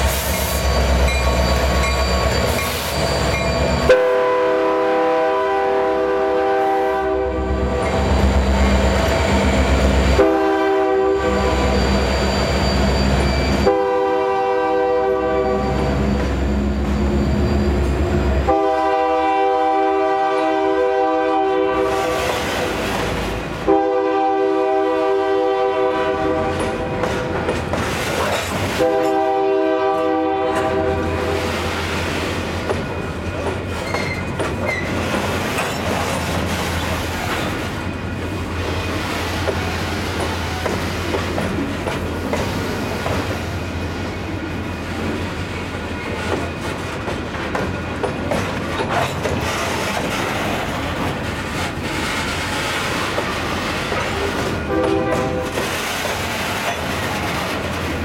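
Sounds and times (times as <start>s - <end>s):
locomotive air horn blasts: 3.8s - 7.9s, 10.0s - 11.8s, 13.6s - 16.0s, 18.4s - 22.3s, 23.6s - 27.3s, 28.7s - 31.6s, 54.6s - 55.6s
train wheels clattering over rails: 26.4s - 29.3s, 30.5s - 58.0s.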